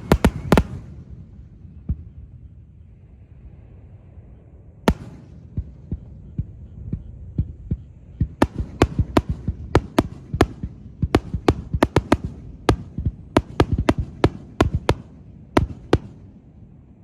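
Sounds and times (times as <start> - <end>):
fireworks shells bursting: 0.0 - 0.8, 4.9 - 5.4
low rumble: 0.0 - 17.0
sharp cracks: 4.9 - 5.6, 8.4 - 16.2.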